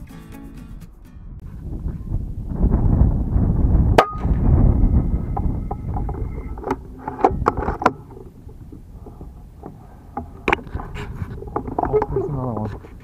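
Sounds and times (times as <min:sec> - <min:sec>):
wind buffeting microphone: 0:01.2 - 0:13.0.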